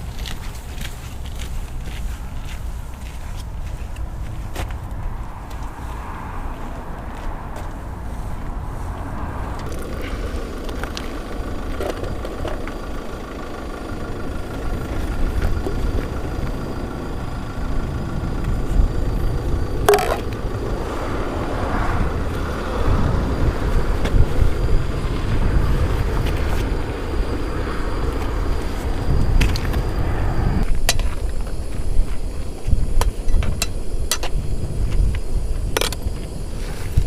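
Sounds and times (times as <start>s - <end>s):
vehicle engine rumbling: 0.0s - 37.0s.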